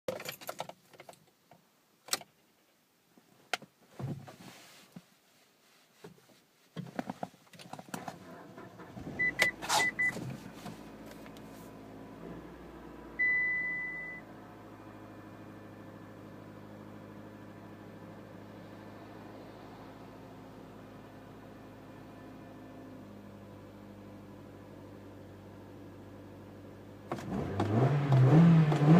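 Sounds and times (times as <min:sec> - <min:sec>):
car engine running quietly: 0:08.0 - 0:28.9
car warning chime beeps: 0:09.2 - 0:10.2, 0:13.2 - 0:14.3.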